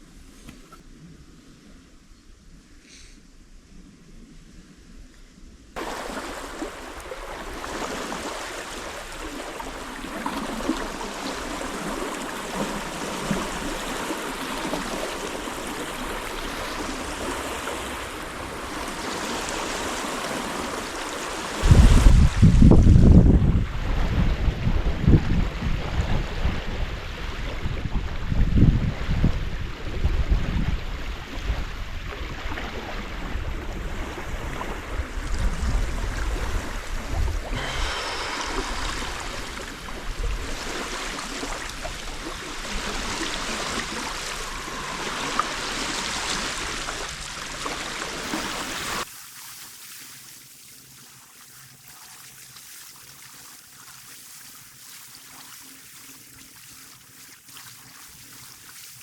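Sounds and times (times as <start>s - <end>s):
water washing: 5.8s - 22.8s, 35.4s - 59.0s
wind buffeting microphone: 21.6s - 49.1s.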